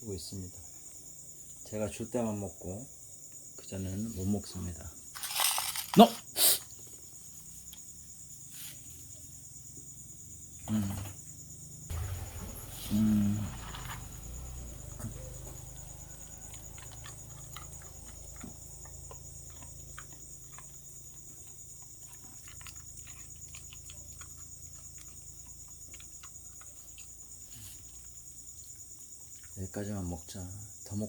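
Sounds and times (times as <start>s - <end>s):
dog crunching dry kibble: 5.2s - 6.2s, 16.4s - 26.8s.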